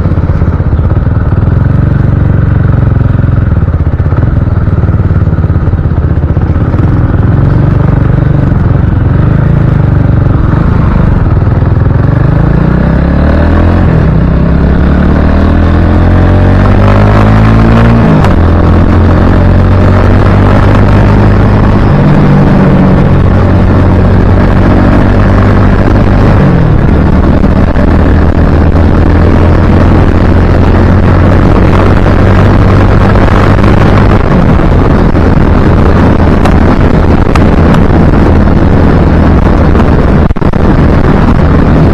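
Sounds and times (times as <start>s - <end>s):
motorcycle engine accelerating: 0.0s - 41.9s
wind buffeting microphone: 15.5s - 41.9s.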